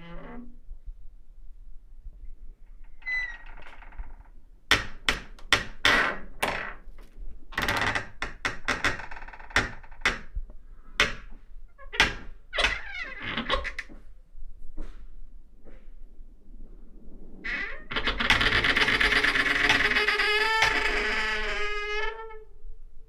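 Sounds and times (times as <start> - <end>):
door creaking on hinges: 0.0 - 0.6, 2.8 - 14.0, 17.4 - 22.5.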